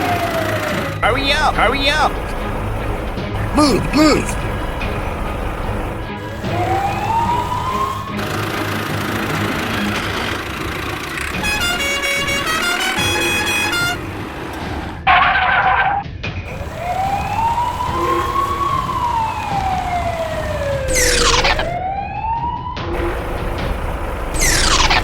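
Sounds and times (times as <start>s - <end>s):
siren wailing: 0.0s - 8.2s, 15.1s - 25.0s
low engine rumble: 0.6s - 15.0s, 16.5s - 21.8s, 23.0s - 25.0s.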